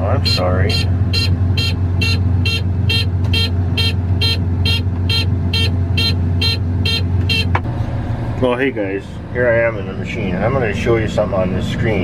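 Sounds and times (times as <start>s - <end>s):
harvester engine hum: 0.0s - 12.0s
warning alarm beeping: 0.2s - 7.9s.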